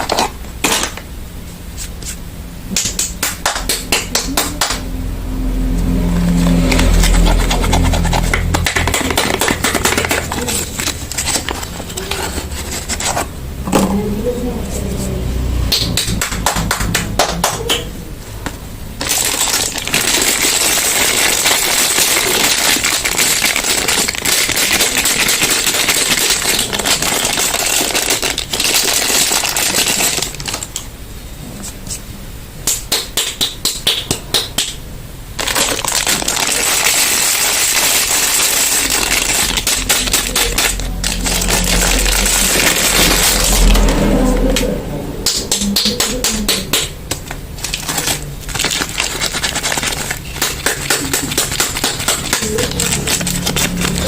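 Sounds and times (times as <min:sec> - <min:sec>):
packaging crinkling and rustling: 0:06.5 - 0:13.3, 0:19.0 - 0:30.8, 0:35.4 - 0:44.1, 0:47.1 - 0:54.0.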